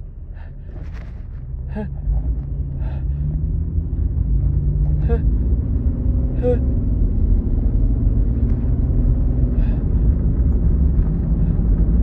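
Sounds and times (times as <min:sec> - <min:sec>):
car engine and road rumble: 0:00.0 - 0:12.0.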